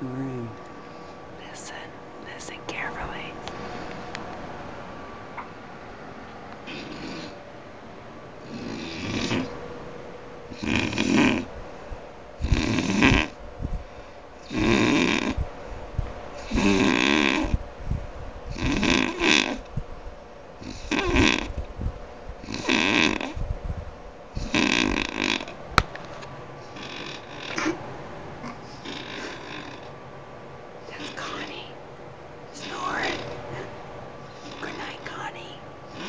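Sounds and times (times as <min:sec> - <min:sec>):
person snoring: 0:00.0 - 0:00.6, 0:08.4 - 0:09.5, 0:10.5 - 0:11.5, 0:12.4 - 0:13.3, 0:14.4 - 0:15.4, 0:16.4 - 0:17.6, 0:18.5 - 0:19.6, 0:20.6 - 0:21.5, 0:24.4 - 0:25.5, 0:28.4 - 0:29.8.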